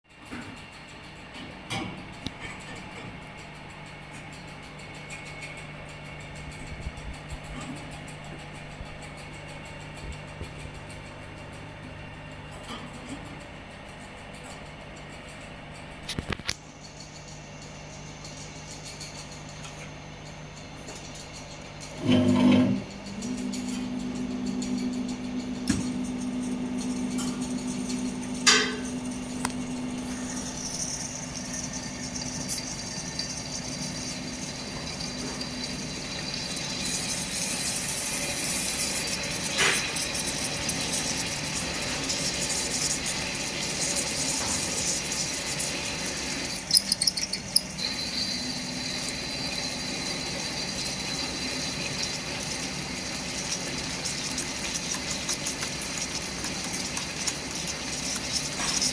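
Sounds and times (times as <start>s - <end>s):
drilling machine running: 21.5s - 58.9s.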